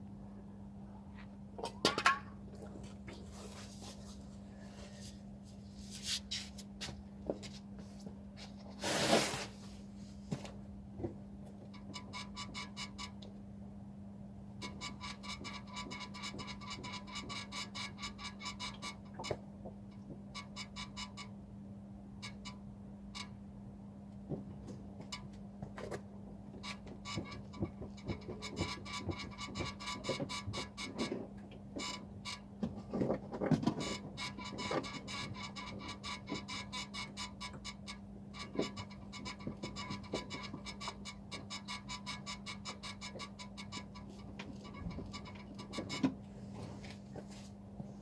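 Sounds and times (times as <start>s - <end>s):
steady low hum: 0.0s - 48.0s
suspension squeaks and creaks: 11.6s - 13.3s, 14.6s - 19.4s, 20.3s - 21.4s, 22.2s - 23.4s, 24.5s - 47.0s.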